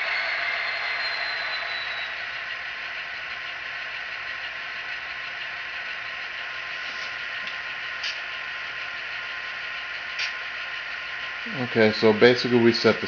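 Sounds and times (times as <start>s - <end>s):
faint high whine: 0.0s - 3.1s
diesel engine sound through small speaker: 0.0s - 13.0s.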